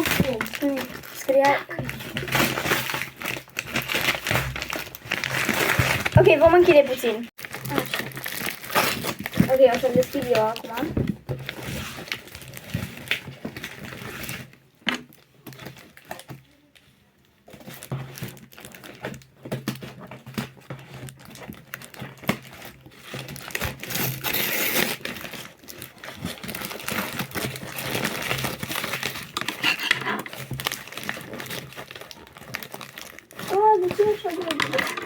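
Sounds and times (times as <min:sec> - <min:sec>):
packaging crinkling: 0:00.0 - 0:16.5, 0:17.5 - 0:35.0.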